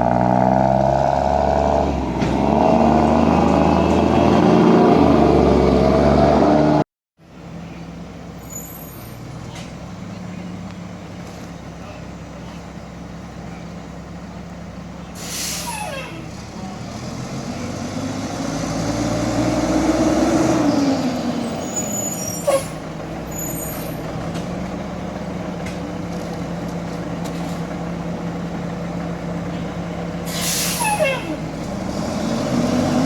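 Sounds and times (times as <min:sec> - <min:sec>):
diesel truck engine revving: 0:00.0 - 0:06.9, 0:07.6 - 0:33.0
air brake hiss with squeal: 0:08.4 - 0:09.2, 0:15.2 - 0:16.2, 0:21.8 - 0:24.0, 0:30.3 - 0:31.2
short sharp air hiss: 0:15.2 - 0:15.8, 0:30.3 - 0:31.0.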